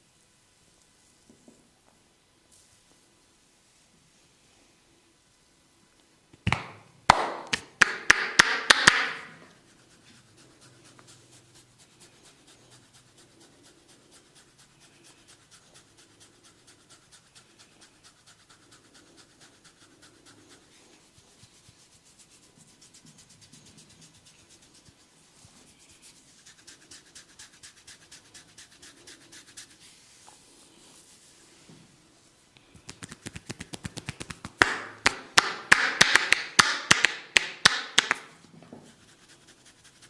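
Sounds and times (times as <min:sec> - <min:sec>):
fingers rubbing through hair: 0:07.5 - 0:31.7, 0:32.6 - 0:40.0.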